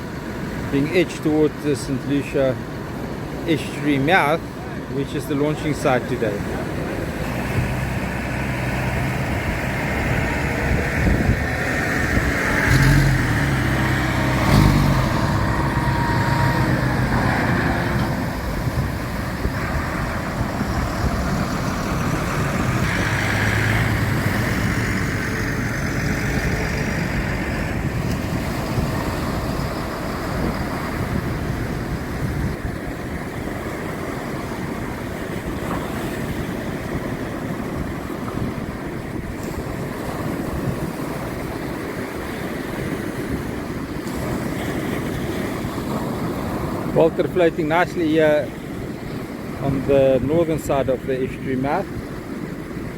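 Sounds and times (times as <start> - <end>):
surf: 0.0 - 52.9
wind: 0.0 - 52.9
engine running at low revs: 6.4 - 47.0.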